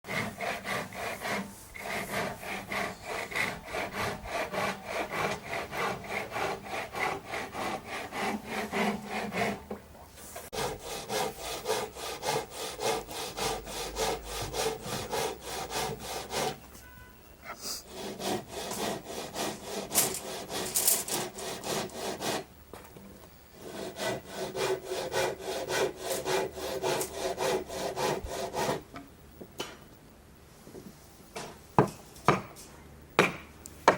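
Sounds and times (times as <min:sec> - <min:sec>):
hand saw cutting wood: 0:00.1 - 0:09.7, 0:10.5 - 0:16.6, 0:17.8 - 0:22.5, 0:23.6 - 0:28.9.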